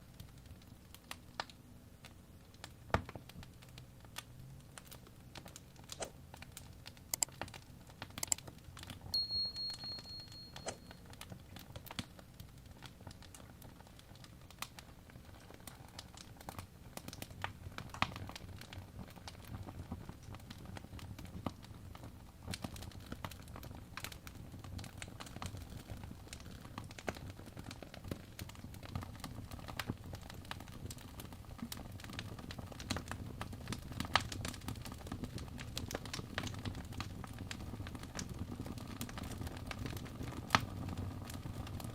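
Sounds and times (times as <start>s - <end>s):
wood fire crackling: 0.0s - 41.9s
high whistle: 9.2s - 10.9s.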